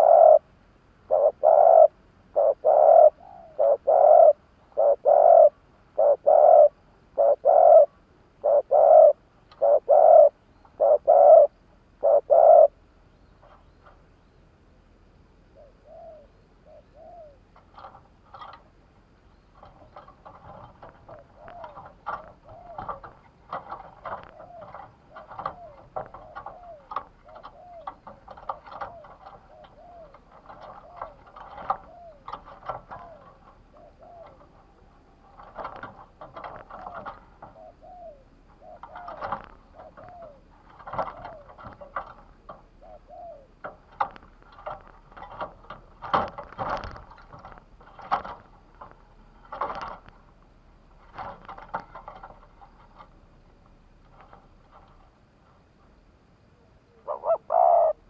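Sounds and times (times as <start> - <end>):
dove cooing: 0.0 - 12.8, 15.5 - 18.6, 19.3 - 50.1, 56.5 - 58.0
sharp clicks and knocks: 17.5 - 37.8, 38.5 - 42.9, 43.5 - 55.7.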